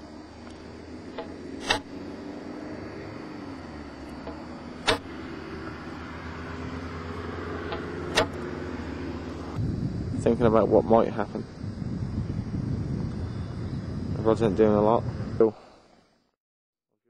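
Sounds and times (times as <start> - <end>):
engine drone: 0.0 - 16.1
sharp clicks: 4.1 - 5.1, 7.7 - 8.4.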